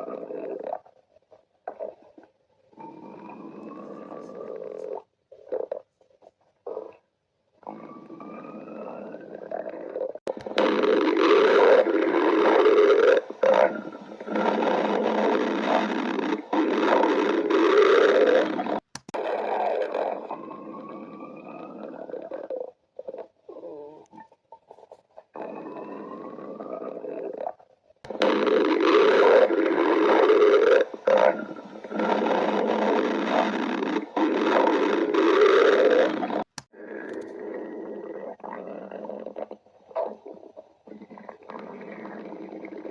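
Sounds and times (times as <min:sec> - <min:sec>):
stomach growling: 0:00.0 - 0:42.9.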